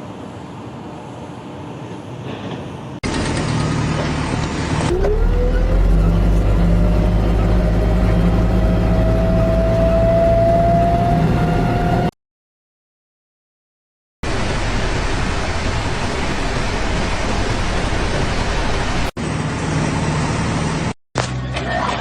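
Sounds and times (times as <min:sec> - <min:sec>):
engine running with rising whine: 0:03.0 - 0:12.2, 0:18.9 - 0:21.6.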